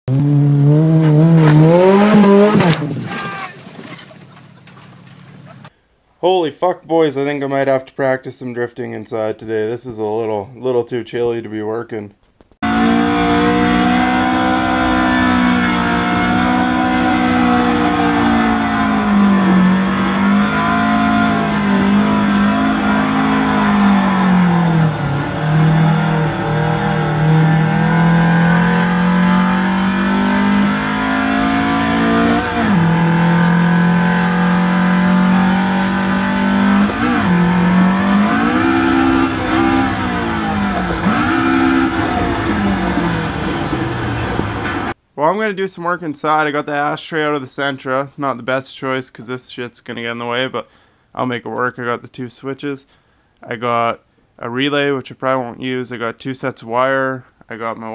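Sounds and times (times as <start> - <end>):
car engine at high revs: 0.1 - 3.1, 12.6 - 45.0.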